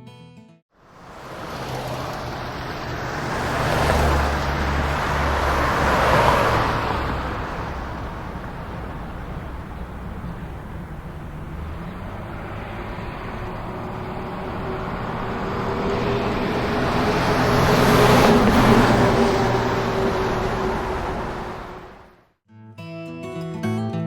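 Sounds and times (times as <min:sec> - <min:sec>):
road noise rush: 0:00.7 - 0:22.4
vehicles passing by: 0:00.8 - 0:22.4
low engine hum: 0:01.0 - 0:22.1.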